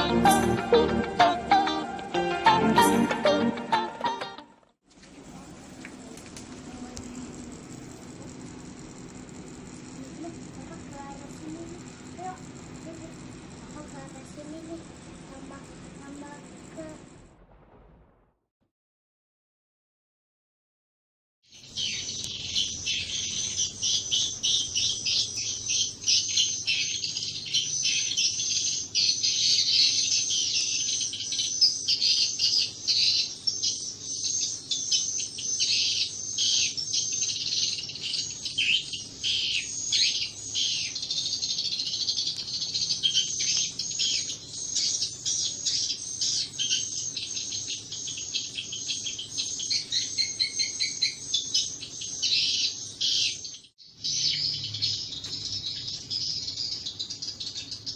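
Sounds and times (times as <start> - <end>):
faint low hum: 4.9 - 18.4
swiftlets twittering: 6.1 - 18.0, 21.6 - 53.5.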